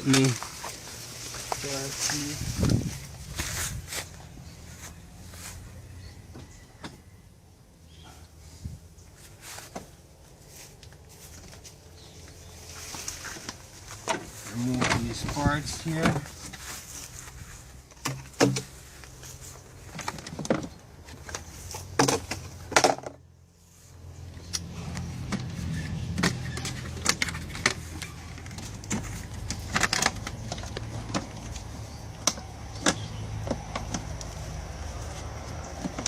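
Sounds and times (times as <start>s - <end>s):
engine parts clicking and knocking: 9.1s - 23.3s, 23.9s - 36.0s.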